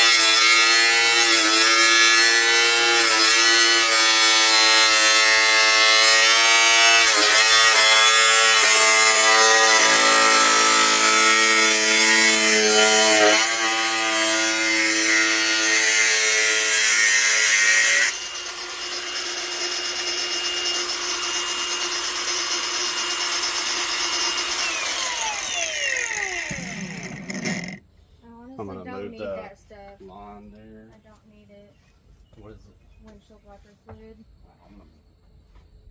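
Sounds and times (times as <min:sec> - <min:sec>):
electric grinder whining: 0:00.0 - 0:27.8.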